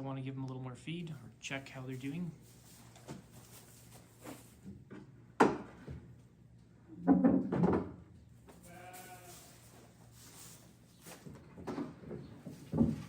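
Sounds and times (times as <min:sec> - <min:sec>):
animal bleating: 0:08.6 - 0:09.7.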